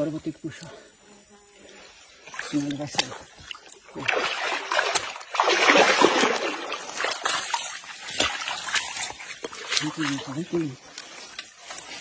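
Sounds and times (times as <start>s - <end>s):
fish thrashing and splashing water: 2.2s - 11.6s.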